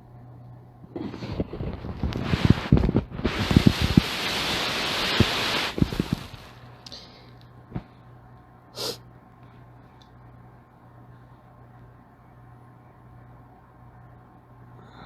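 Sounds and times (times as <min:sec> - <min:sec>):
laptop hum: 0:00.0 - 0:15.0
short hiss: 0:02.2 - 0:06.5, 0:08.8 - 0:09.0.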